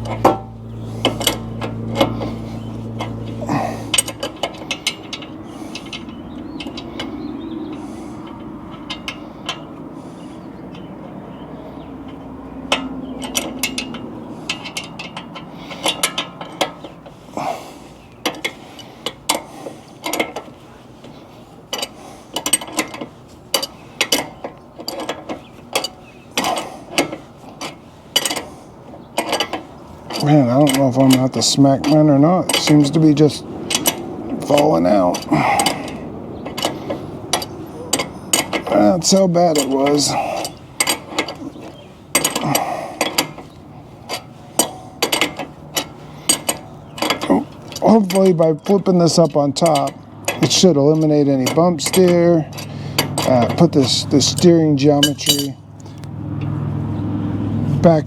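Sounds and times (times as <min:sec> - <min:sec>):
metal parts clinking: 0:00.0 - 0:56.6
steady low hum: 0:00.0 - 0:57.9
ratchet wrench clicking: 0:29.2 - 0:56.5.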